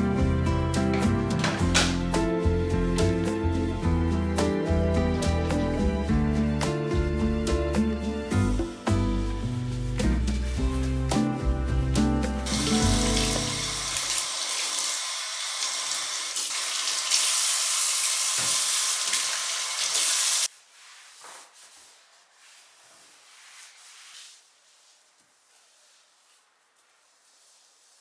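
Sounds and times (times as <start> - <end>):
tap water running into sink: 12.4 - 20.5.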